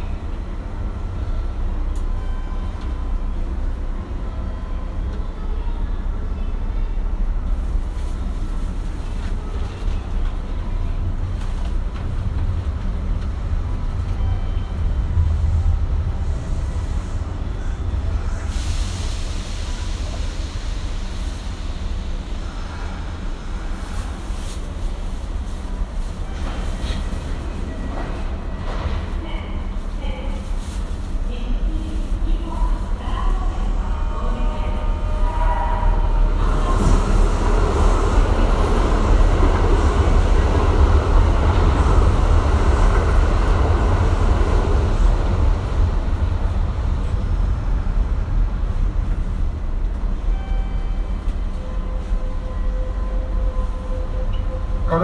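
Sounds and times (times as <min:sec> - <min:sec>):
train low rumble: 0:00.0 - 0:55.0
hiss: 0:18.1 - 0:24.2.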